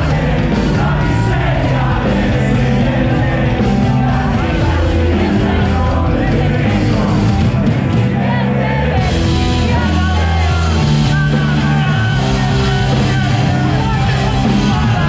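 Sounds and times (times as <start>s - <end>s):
loud rock music: 0.0s - 15.0s.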